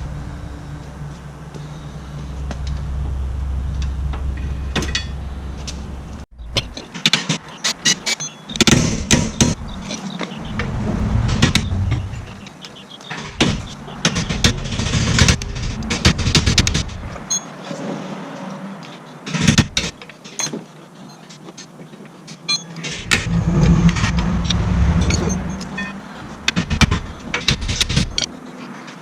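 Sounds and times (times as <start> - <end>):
steady low hum: 0.0 - 6.8, 8.9 - 12.7, 22.8 - 28.2
hand tools clanking on metal: 4.1 - 5.9.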